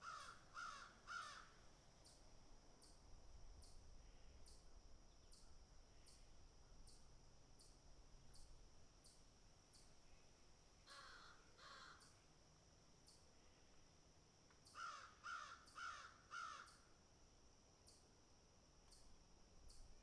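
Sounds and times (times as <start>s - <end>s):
crows cawing: 0.0s - 1.6s, 10.9s - 12.1s, 14.8s - 16.8s.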